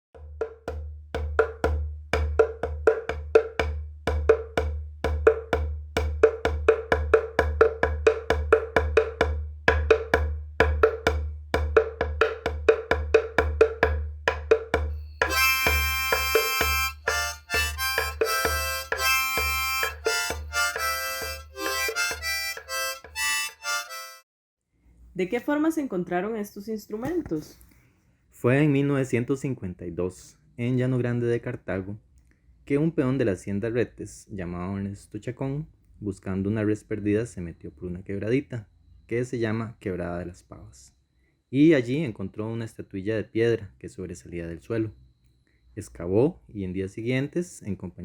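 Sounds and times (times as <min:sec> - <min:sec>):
wooden percussion strikes: 0:00.2 - 0:24.2
reedy instrument chords: 0:15.2 - 0:24.2.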